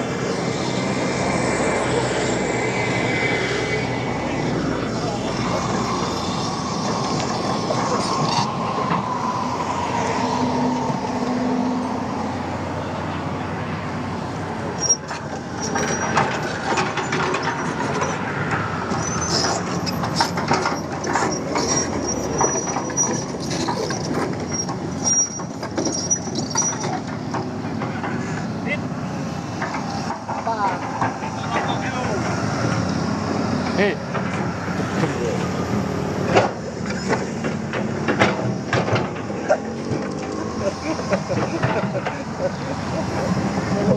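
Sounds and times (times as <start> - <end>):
heavy machinery whining: 0.0 - 43.9
high metallic squeal: 5.7 - 12.0, 14.8 - 27.0
metal clanks and knocks: 14.9 - 28.2, 36.3 - 42.6.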